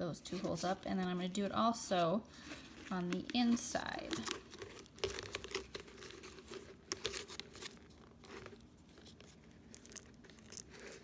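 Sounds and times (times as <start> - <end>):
foil duct crinkling: 0.0 - 11.0.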